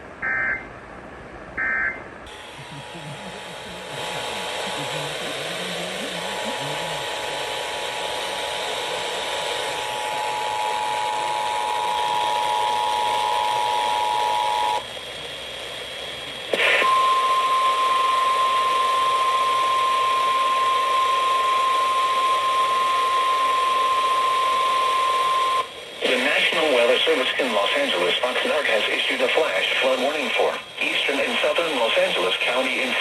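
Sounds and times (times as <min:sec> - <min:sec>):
two-tone attention signal: 0:00.2 - 0:00.7, 0:01.6 - 0:05.0
steady alarm tone: 0:01.6 - 0:14.9, 0:16.6 - 0:33.0
radio hiss: 0:02.3 - 0:07.9, 0:08.9 - 0:15.4, 0:16.1 - 0:17.5, 0:23.9 - 0:33.0.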